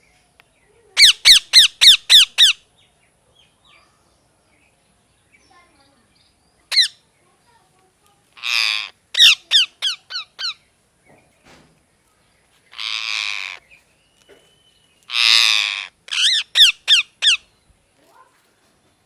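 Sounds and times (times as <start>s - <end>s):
parakeet screeches: 1.0s - 2.6s, 6.7s - 6.9s, 8.4s - 10.6s, 12.7s - 13.6s, 15.1s - 17.4s
parakeet sharp chirps: 1.0s - 2.6s, 6.7s - 7.0s, 8.4s - 10.6s, 15.1s - 17.4s.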